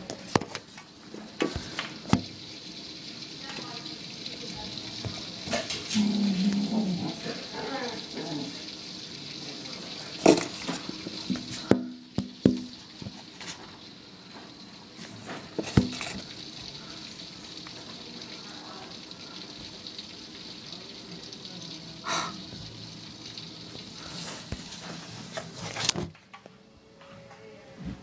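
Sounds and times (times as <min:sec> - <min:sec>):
heavy rain hissing: 0:00.0 - 0:26.0.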